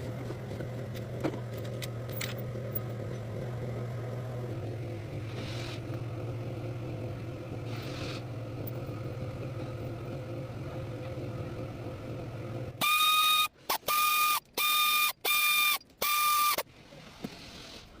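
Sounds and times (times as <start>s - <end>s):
car engine humming: 0.0s - 12.8s.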